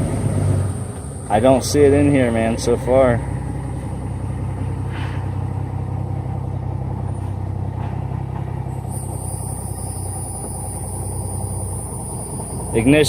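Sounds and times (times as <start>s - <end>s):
vehicle engine idling: 0.0s - 13.0s
thin high-pitched whine: 8.9s - 13.0s.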